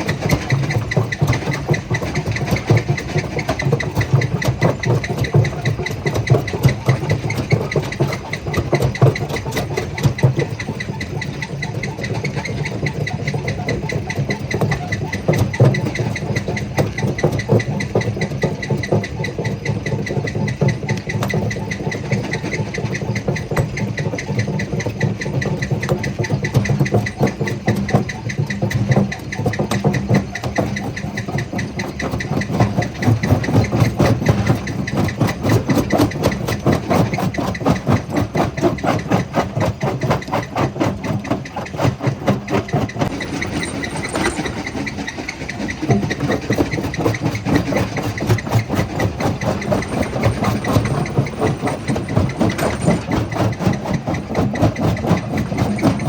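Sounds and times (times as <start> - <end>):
jaw crusher rattling: 29.9 - 56.0.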